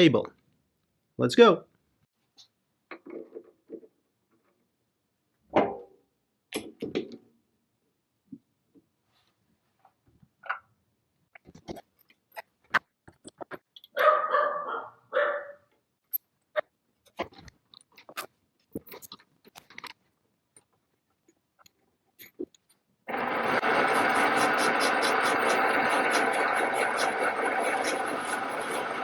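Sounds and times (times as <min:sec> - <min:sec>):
tools and parts clicking: 0:11.3 - 0:14.0, 0:17.0 - 0:22.9
dog barking: 0:14.0 - 0:15.7
machine running: 0:23.1 - 0:29.0.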